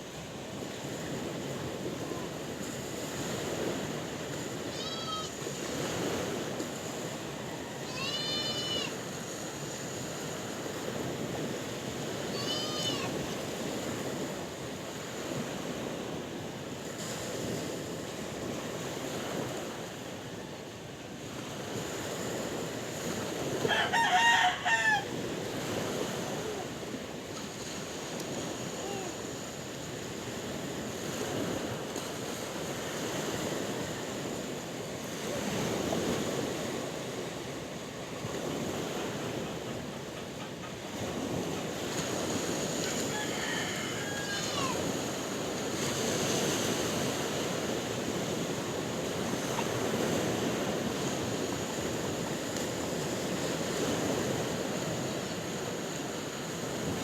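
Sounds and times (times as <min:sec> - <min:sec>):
sea waves washing: 0:00.0 - 0:57.0
rooster crowing: 0:07.3 - 0:09.0, 0:23.6 - 0:25.2, 0:42.8 - 0:45.0.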